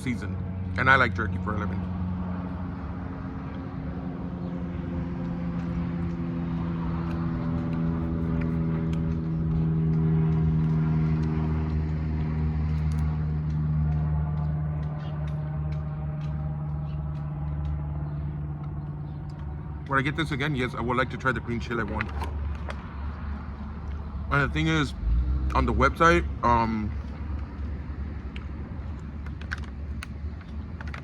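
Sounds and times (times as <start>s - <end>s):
vehicle engine idling: 0.0s - 31.0s.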